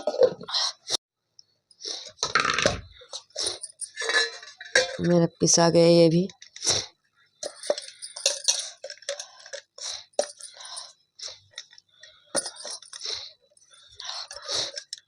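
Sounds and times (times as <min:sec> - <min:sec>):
metal utensils clinking and scraping: 0:03.1 - 0:05.3, 0:07.4 - 0:10.9, 0:12.4 - 0:13.3, 0:13.9 - 0:15.0.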